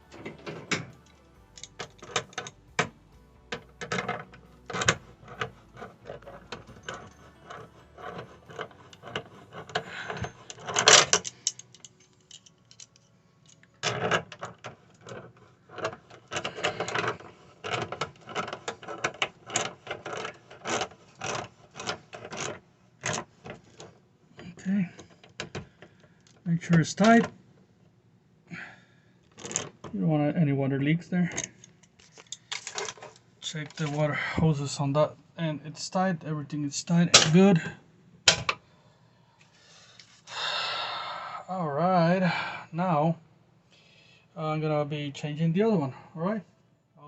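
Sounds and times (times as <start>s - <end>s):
rattling: 0.0s - 23.9s
hose coupling clicking and knocking: 0.1s - 12.4s, 38.3s - 38.6s.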